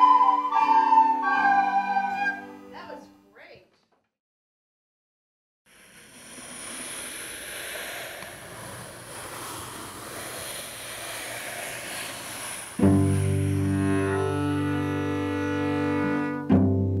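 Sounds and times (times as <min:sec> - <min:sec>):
steady rushing noise: 0:05.7 - 0:14.5.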